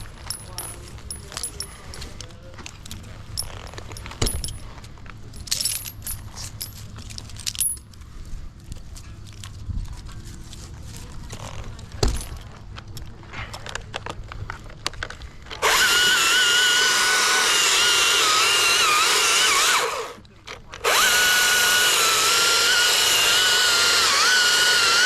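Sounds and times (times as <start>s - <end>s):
chainsaw cutting wood: 15.6s - 20.2s, 20.8s - 25.0s.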